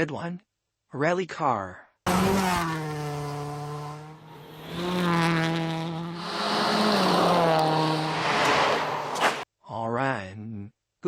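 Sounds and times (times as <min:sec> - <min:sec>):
race car engine high revs: 0:02.1 - 0:09.4.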